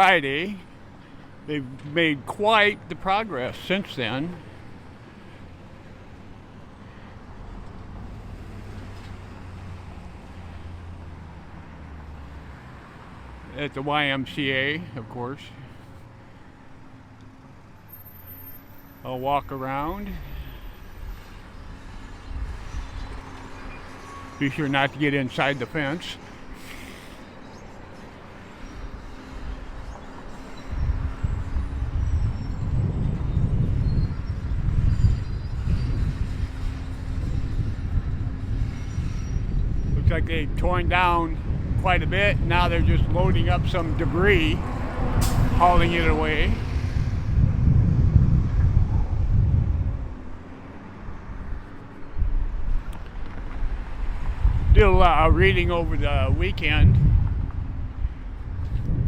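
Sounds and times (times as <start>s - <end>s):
vehicle engine rumble: 0.0s - 59.0s
wind on microphone: 30.6s - 50.4s, 52.2s - 59.0s.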